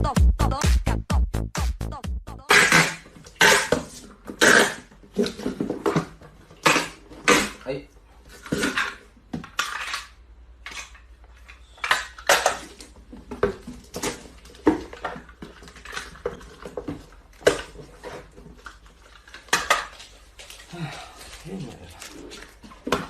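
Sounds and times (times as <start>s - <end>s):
hard objects clattering: 2.5s - 7.6s, 8.3s - 23.0s.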